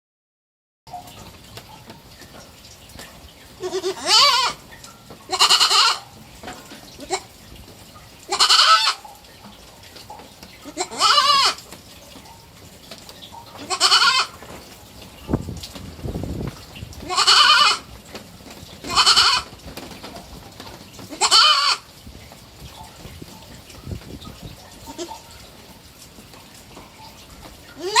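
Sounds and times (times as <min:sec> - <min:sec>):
goat kid bleating: 0:03.6 - 0:04.6, 0:05.3 - 0:06.1, 0:07.0 - 0:07.3, 0:08.3 - 0:09.0, 0:10.6 - 0:11.6, 0:13.6 - 0:14.4, 0:17.0 - 0:17.9, 0:18.8 - 0:19.5, 0:21.1 - 0:21.9, 0:24.9 - 0:25.2, 0:27.8 - 0:28.0.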